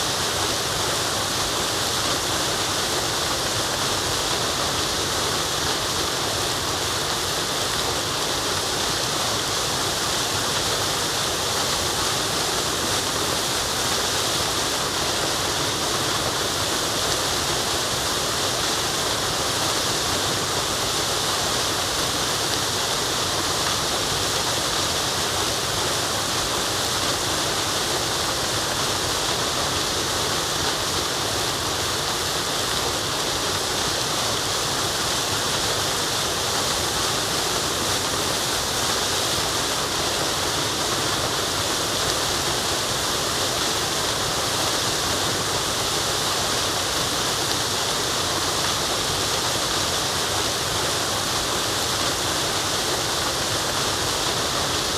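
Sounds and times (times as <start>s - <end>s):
waterfall rushing: 0.0s - 54.9s.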